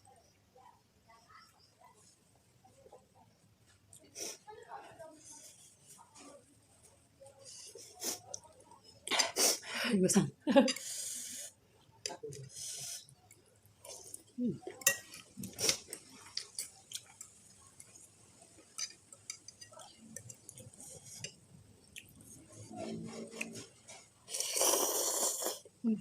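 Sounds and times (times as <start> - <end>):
spoon clinking against bowl: 14.7 - 15.3.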